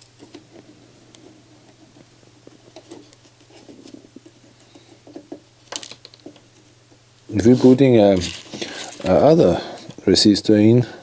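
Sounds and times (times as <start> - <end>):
small tools clicking and scratching: 7.4 - 10.0.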